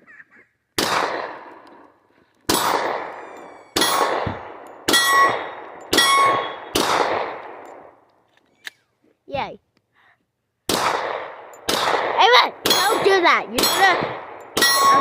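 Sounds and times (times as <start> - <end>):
pistol shots with ringing echo: 0.8 - 1.6, 2.5 - 8.0, 10.7 - 15.0.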